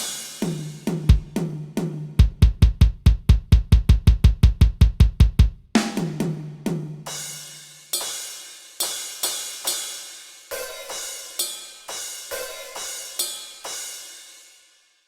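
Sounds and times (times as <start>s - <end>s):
cymbal crashes: 0.0s - 1.2s, 7.1s - 14.6s
ringing tom drum strikes: 0.0s - 7.4s
heavy low drum hits: 1.0s - 1.4s, 2.2s - 5.6s.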